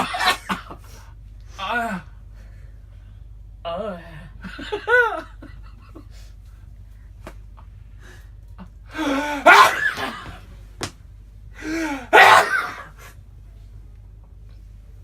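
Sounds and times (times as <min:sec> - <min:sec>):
man sneezing: 0:09.0 - 0:10.3, 0:11.7 - 0:13.0.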